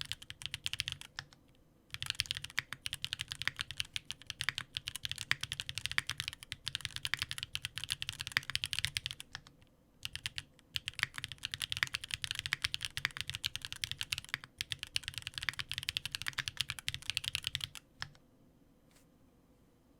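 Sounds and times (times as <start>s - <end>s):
fast typing on mechanical keyboard: 0.0s - 18.2s.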